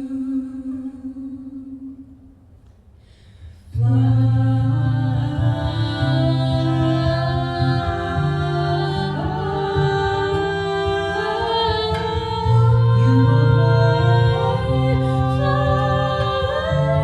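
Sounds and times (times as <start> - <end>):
folk singing with held notes: 3.7 - 17.0.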